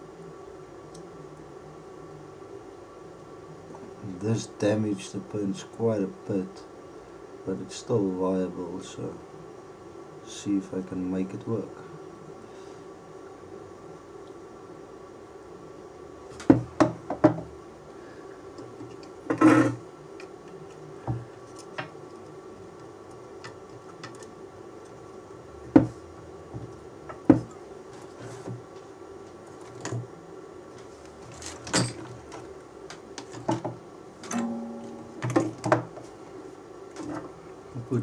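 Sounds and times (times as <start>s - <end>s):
steady low hum: 0.0s - 38.0s
short low buzz: 34.3s - 35.6s.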